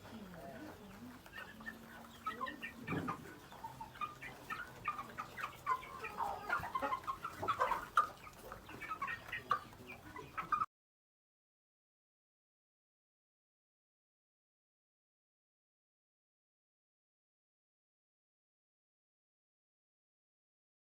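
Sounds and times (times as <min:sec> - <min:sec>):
chickens clucking: 0:00.0 - 0:10.7.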